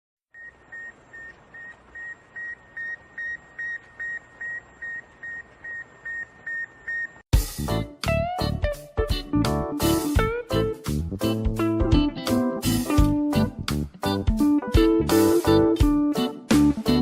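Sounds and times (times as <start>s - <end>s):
music with plucked guitar: 7.4s - 17.0s.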